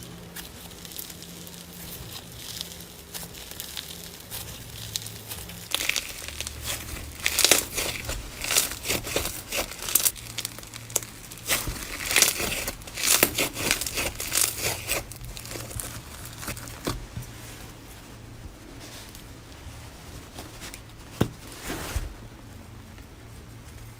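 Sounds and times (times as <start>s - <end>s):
slime squeezed crackling and popping: 0.1s - 17.2s.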